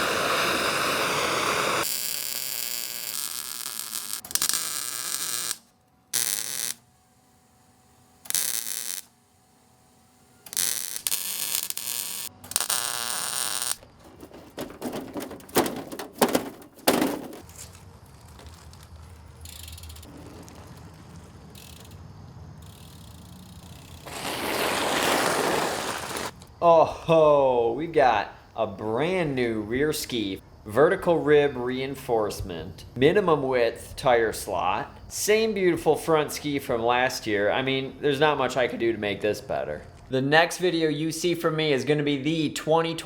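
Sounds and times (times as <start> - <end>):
workshop power tools: 0.0 - 17.8, 23.9 - 26.4.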